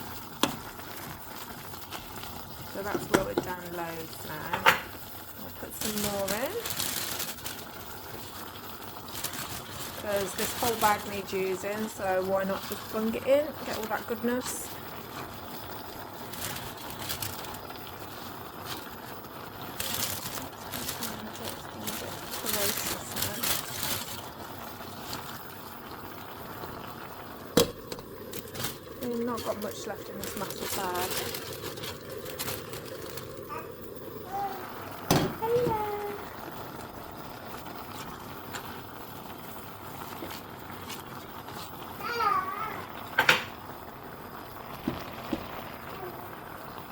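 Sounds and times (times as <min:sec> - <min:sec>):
plastic bag rustling: 0:00.0 - 0:43.1, 0:44.4 - 0:46.6.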